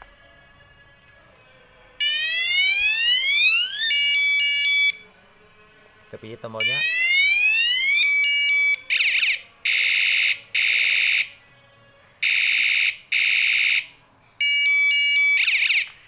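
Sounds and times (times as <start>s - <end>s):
electronic bicycle siren warble: 2.0s - 5.0s, 6.6s - 11.3s, 12.2s - 15.9s.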